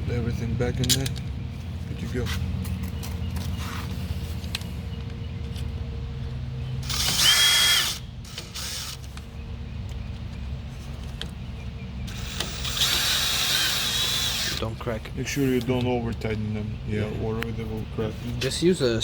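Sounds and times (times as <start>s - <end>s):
cordless drill motor whine: 6.8s - 9.2s, 12.1s - 14.6s.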